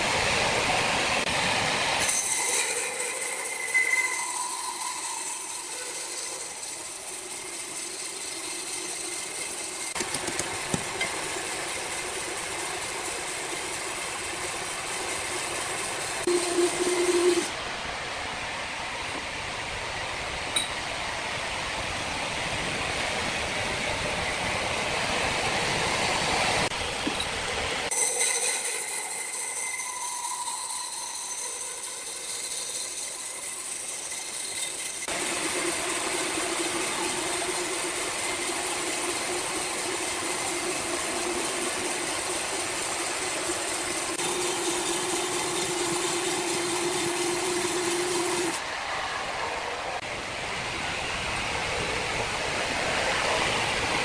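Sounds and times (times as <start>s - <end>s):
sawmill machinery whirring: 0.0s - 18.0s, 22.2s - 54.0s
humming tone: 16.3s - 17.6s.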